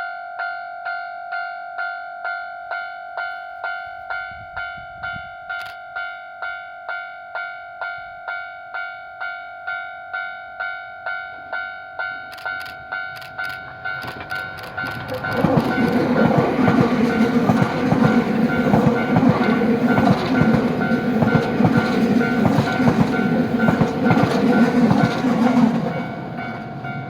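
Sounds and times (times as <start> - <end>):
level crossing warning bell: 0.0 - 27.0
train wheels clicking on rails: 12.3 - 26.9.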